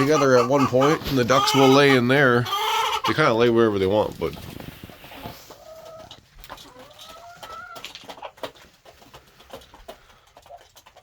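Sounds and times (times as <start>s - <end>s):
chicken calling: 0.0s - 3.4s.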